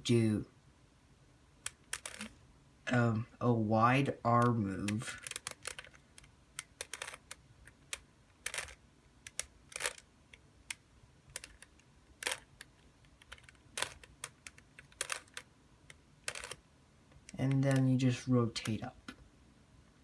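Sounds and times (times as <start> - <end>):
plastic cube clicking: 1.6 - 2.3, 4.4 - 16.6, 17.2 - 17.9.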